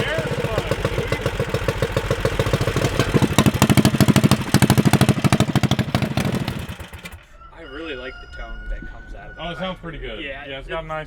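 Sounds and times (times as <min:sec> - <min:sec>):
deep exhaust pulses revving: 0:00.0 - 0:07.2.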